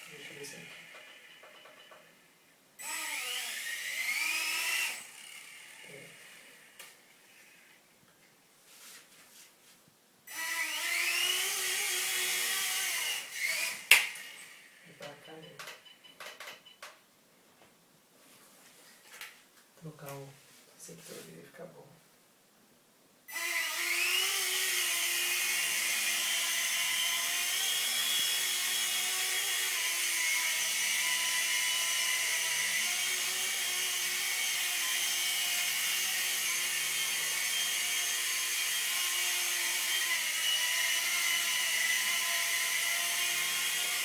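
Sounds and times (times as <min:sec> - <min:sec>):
toy helicopter motor whine: 0:02.8 - 0:07.8, 0:10.3 - 0:14.8, 0:23.3 - 0:44.0.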